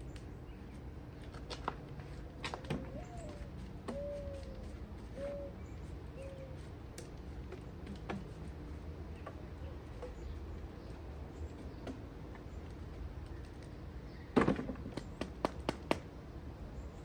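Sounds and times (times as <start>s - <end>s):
steady low hum: 0.0s - 17.0s
bird calling with low notes: 2.7s - 6.9s.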